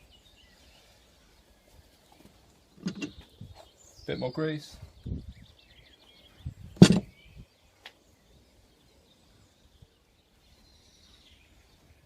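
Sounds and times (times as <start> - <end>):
faint bird chirping: 0.0 - 12.0
sharp knock: 6.8 - 7.1.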